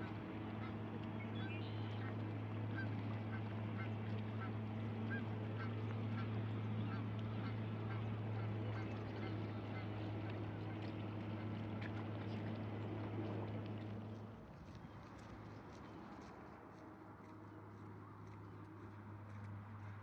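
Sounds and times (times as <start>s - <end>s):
waterfowl calling: 0.0s - 11.9s.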